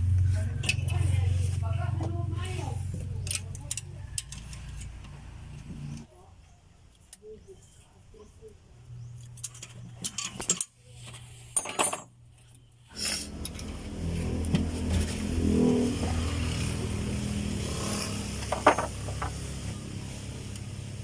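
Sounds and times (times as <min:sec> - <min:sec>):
metal tools clinking: 0:11.5 - 0:12.1
small engine starting and running: 0:12.9 - 0:21.0.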